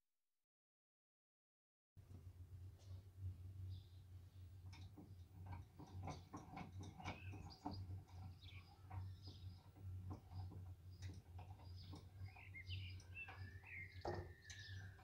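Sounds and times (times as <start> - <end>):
steady low hum: 2.0 - 15.0
faint ticks and clicks: 4.6 - 14.8
bird chirps: 7.0 - 15.0.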